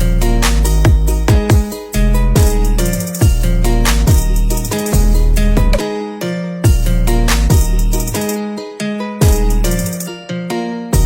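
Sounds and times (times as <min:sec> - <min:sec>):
deep bass kick: 0:00.0 - 0:05.8, 0:06.7 - 0:08.0
plucked guitar-like notes: 0:00.0 - 0:11.0.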